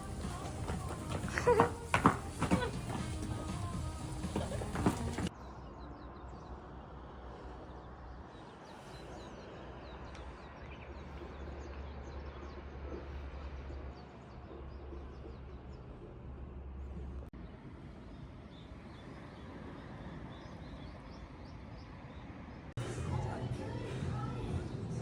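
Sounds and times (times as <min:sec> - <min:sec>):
small birds chirping: 0:00.0 - 0:17.2.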